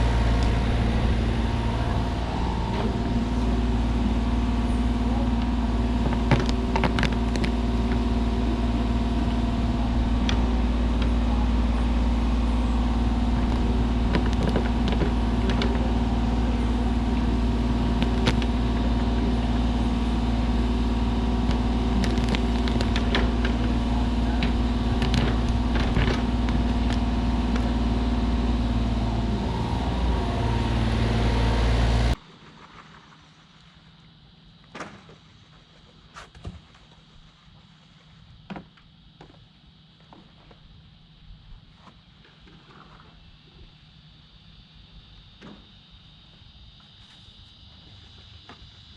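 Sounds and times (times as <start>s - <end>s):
diesel engine running: 0.0s - 32.2s.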